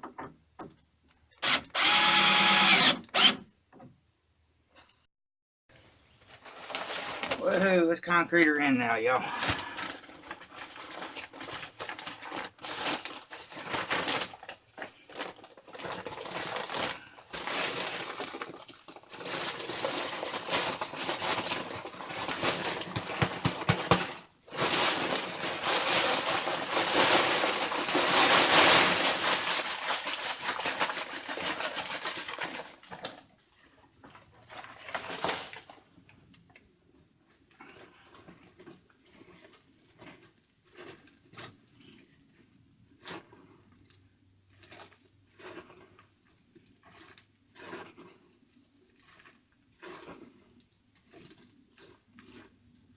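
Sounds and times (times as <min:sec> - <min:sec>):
dry concrete mix pouring: 0:06.3 - 0:33.3, 0:34.0 - 0:36.2
scraping and knocking: 0:09.4 - 0:33.2.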